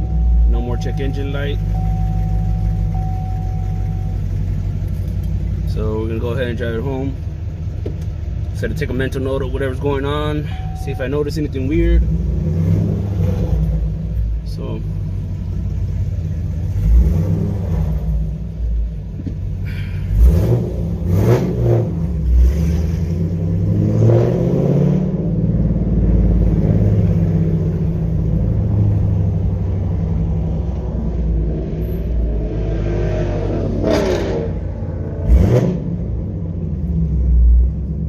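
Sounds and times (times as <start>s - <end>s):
car engine revving: 11.2s - 38.0s.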